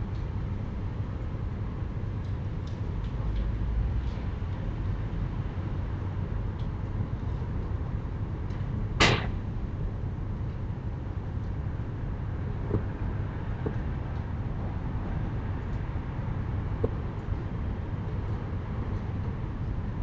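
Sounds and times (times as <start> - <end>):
low background rumble: 0.0 - 20.0
sharp bang with ringing tail: 9.0 - 9.4.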